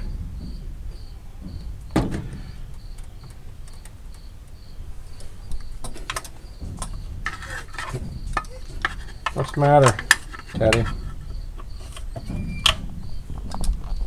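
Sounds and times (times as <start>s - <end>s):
sharp knock: 0.0s - 4.3s
cricket chirping: 0.0s - 14.0s
light metal clicks and rattle: 0.0s - 14.0s.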